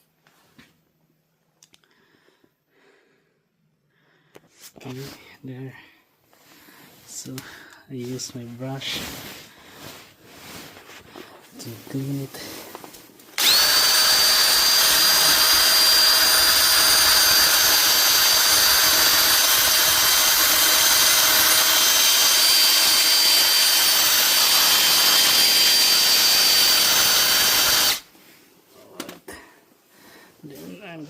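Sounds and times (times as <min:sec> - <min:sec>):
power drill whining: 0:13.4 - 0:28.1.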